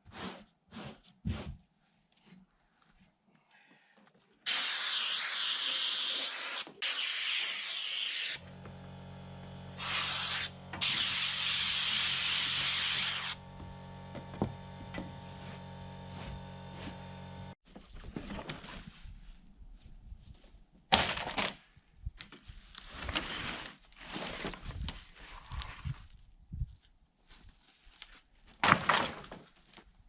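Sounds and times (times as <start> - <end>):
hissing spray blasts: 4.5 - 8.4, 9.8 - 13.4
motor humming: 8.4 - 17.6.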